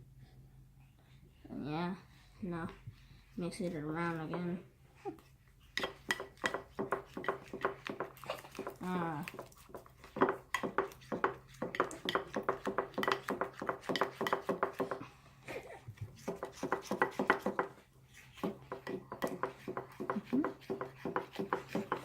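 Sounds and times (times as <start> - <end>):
utensil stirring glue in cup: 5.7 - 15.0, 16.0 - 22.0.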